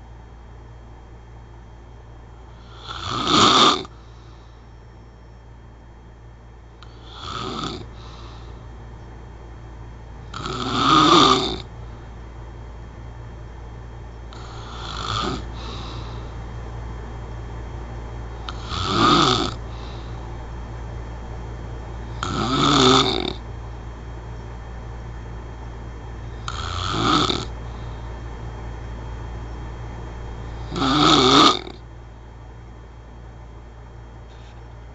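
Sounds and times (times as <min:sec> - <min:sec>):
steady low hum: 0:00.0 - 0:34.9
person snoring: 0:02.6 - 0:04.4, 0:06.8 - 0:08.6, 0:10.3 - 0:11.7, 0:14.3 - 0:16.4, 0:18.4 - 0:20.2, 0:22.0 - 0:23.4, 0:26.4 - 0:28.0, 0:30.4 - 0:31.8.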